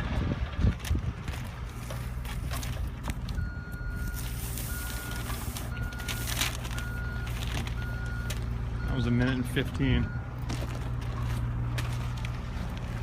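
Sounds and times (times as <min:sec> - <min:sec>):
engine rumbling: 0:00.0 - 0:13.0
back-up alarm beeping: 0:03.3 - 0:10.5.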